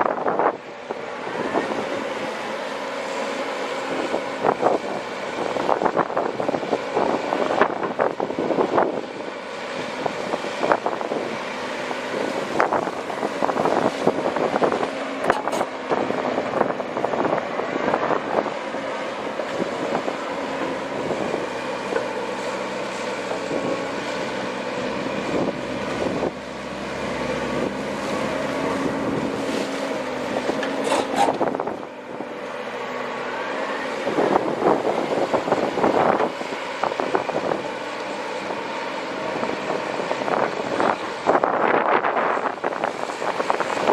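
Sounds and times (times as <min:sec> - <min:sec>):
excavator diesel engine: 0:00.0 - 0:43.9.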